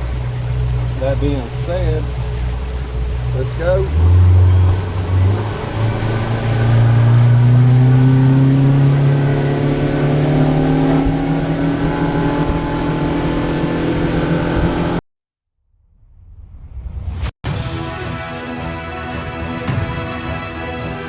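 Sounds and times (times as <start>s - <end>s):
outboard motor accelerating: 0.0s - 15.0s.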